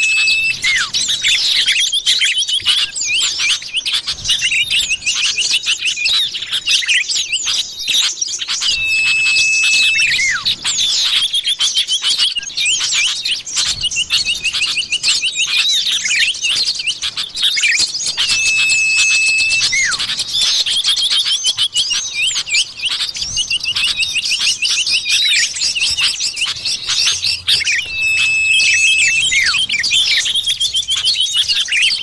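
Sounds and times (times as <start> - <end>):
long steady whistle: 0.0 - 1.5, 8.6 - 10.8, 18.0 - 21.0, 26.3 - 31.0
falling whistled notes: 0.0 - 1.9, 8.6 - 11.3, 17.6 - 21.1, 23.3 - 31.9
bird chirping and chattering: 0.0 - 32.0.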